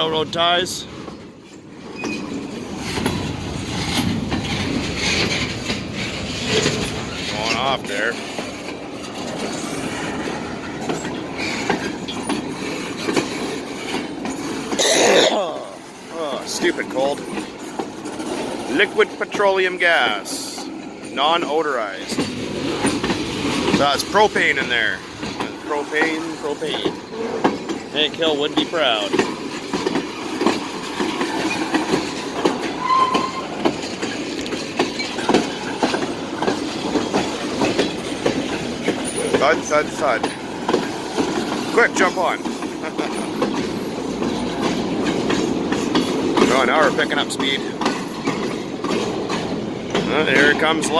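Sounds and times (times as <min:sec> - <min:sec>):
train wheels rumbling on rails: 0:00.0 - 0:50.9
wheel squeal: 0:02.0 - 0:03.0, 0:32.6 - 0:34.2
short high squeal: 0:32.8 - 0:33.5.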